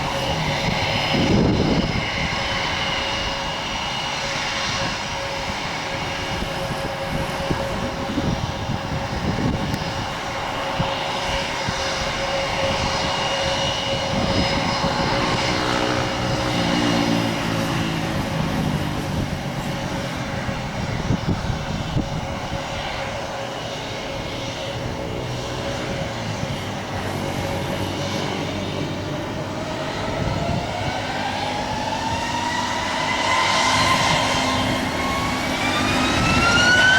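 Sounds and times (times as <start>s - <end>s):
jet engines roaring: 0.0s - 36.9s
whine rising in pitch: 0.0s - 36.9s.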